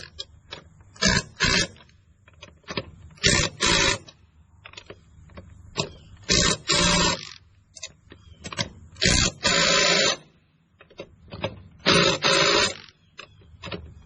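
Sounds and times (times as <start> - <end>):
impact wrench bursts: 0.9 - 1.8, 3.2 - 4.1, 6.2 - 7.4, 9.0 - 10.3, 11.8 - 13.0.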